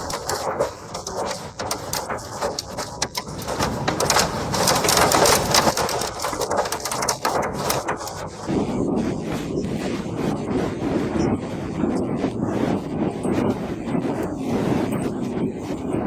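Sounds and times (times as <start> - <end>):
hailstones pelting hard surfaces: 0.0 - 8.5.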